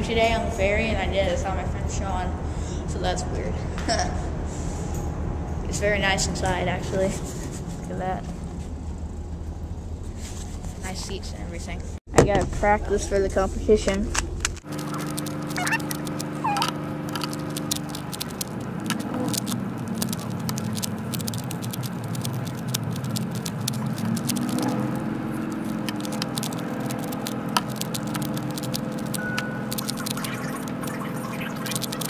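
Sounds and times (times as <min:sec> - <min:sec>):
steady background hum: 0:14.2 - 0:32.0
plastic puzzle cube clicking: 0:14.7 - 0:24.8, 0:25.4 - 0:30.3.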